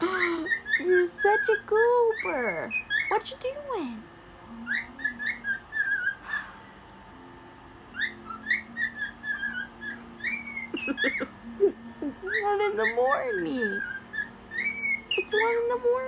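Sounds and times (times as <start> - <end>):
cockatiel whistling: 0.1 - 3.2, 4.6 - 6.6, 7.9 - 11.4, 12.2 - 16.0.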